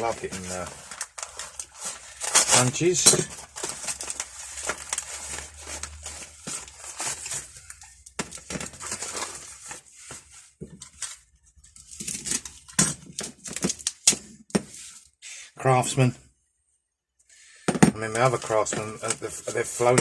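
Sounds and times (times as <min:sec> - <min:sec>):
packaging crinkling: 0:00.0 - 0:09.8.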